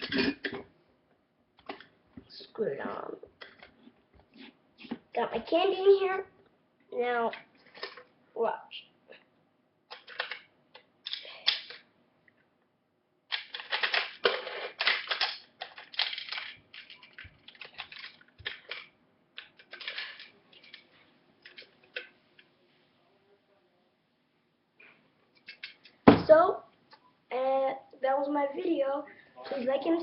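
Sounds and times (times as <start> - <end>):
gumball machine clicks and rattles: 9.9 - 11.8, 13.3 - 20.8.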